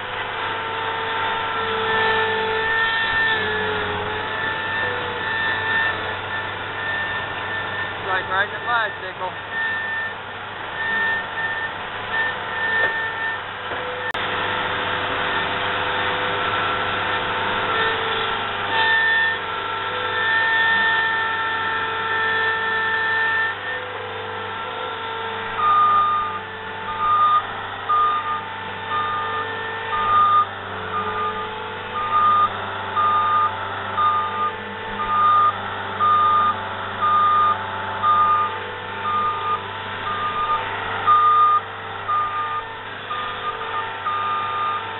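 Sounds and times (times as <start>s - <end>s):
diesel construction machinery running: 0.0s - 44.9s
reversing alarm beeping: 1.7s - 14.2s, 18.7s - 24.1s, 24.8s - 44.9s
high-pitched tone: 4.3s - 10.2s.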